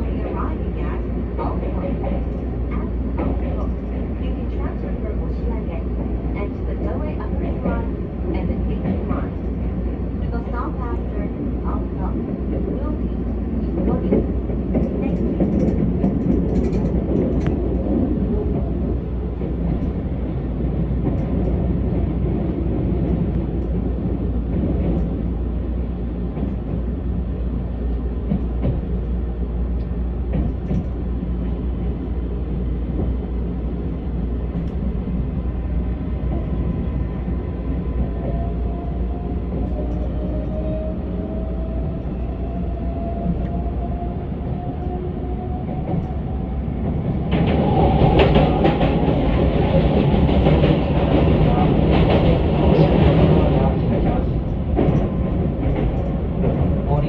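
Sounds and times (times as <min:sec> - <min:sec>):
train rumble inside car: 0:00.0 - 0:57.0
light clicks from track: 0:29.8 - 0:31.0.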